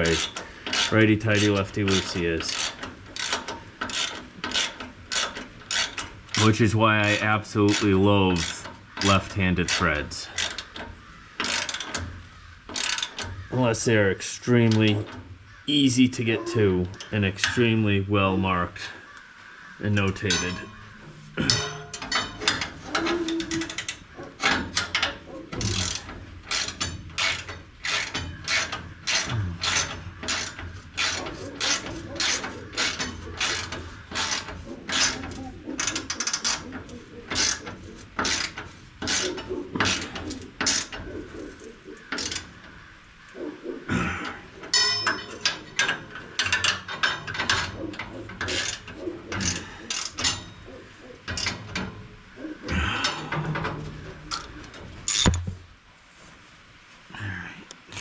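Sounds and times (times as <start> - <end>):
ratchet wrench clicking: 0.1 - 8.6, 24.7 - 35.2.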